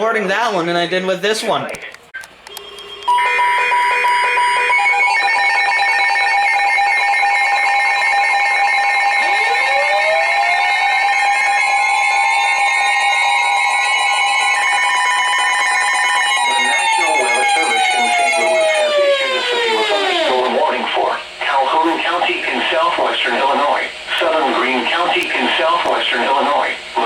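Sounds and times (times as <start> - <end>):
steady two-tone alarm: 2.5 - 21.6.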